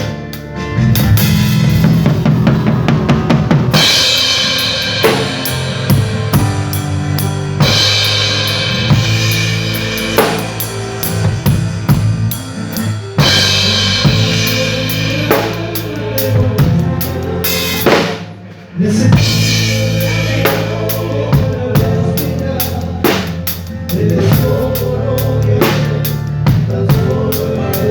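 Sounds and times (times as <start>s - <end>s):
drum kit: 0.0s - 27.9s
live band playing: 0.0s - 27.9s
low bass notes: 0.0s - 27.9s
cymbal crashes: 3.8s - 12.6s.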